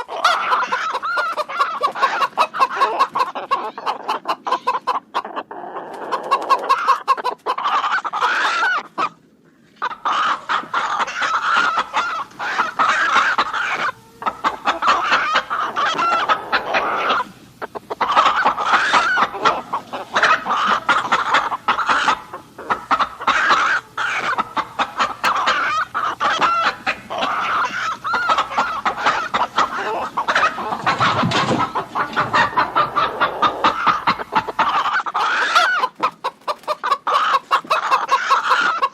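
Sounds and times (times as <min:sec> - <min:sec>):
chickens clucking and cackling: 0:00.0 - 0:38.9.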